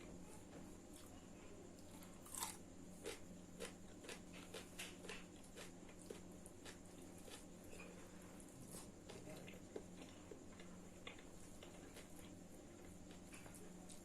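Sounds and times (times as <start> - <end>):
low steady hum: 0.0 - 14.0
crunchy bite: 1.8 - 7.8
soft mouth clicks chewing: 1.8 - 14.0.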